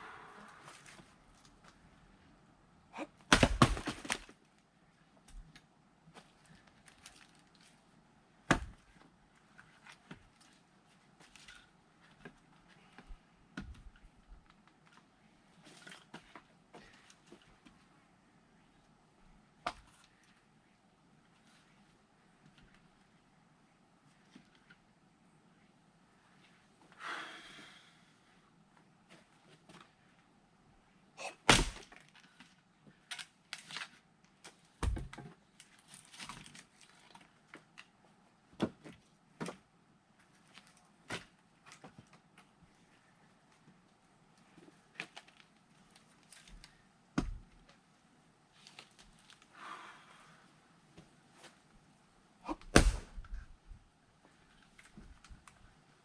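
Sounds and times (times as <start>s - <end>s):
axe splitting wood: 3.3s - 4.2s, 31.4s - 31.9s, 52.5s - 53.2s.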